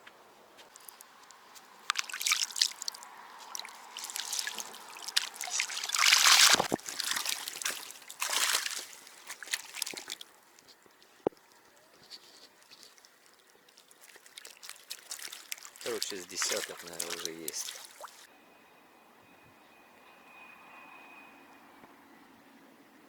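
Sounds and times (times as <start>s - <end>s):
water splashing and sloshing: 0.6s - 18.3s.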